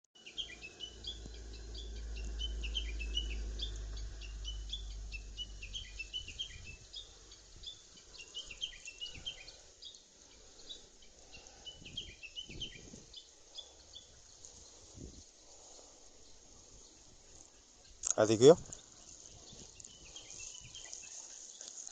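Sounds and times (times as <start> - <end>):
small birds chirping: 0.2 - 21.9
low rumble: 0.9 - 7.6.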